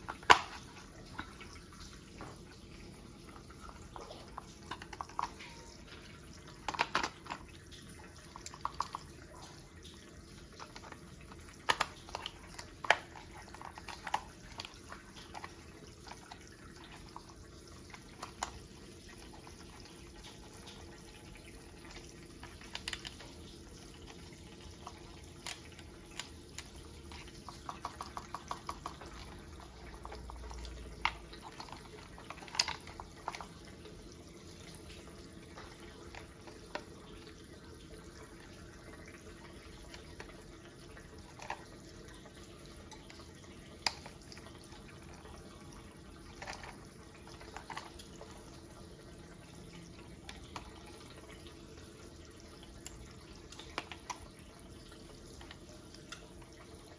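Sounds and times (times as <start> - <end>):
plastic toy parts clicking: 0.0 - 0.6, 6.5 - 7.5, 10.6 - 17.2, 17.9 - 19.8, 21.9 - 23.4, 24.0 - 33.6, 46.3 - 48.0.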